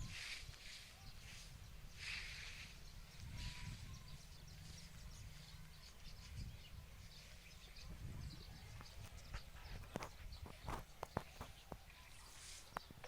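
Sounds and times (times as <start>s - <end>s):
wind rumble on microphone: 0.0s - 11.8s
faint bird chirps: 0.0s - 13.0s.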